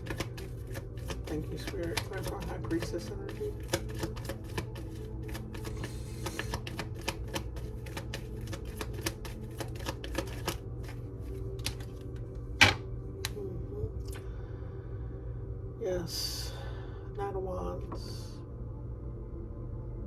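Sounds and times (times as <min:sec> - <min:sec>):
cards being shuffled: 0:00.0 - 0:13.4
cards snapping: 0:00.0 - 0:13.4
soft background music: 0:00.0 - 0:20.0.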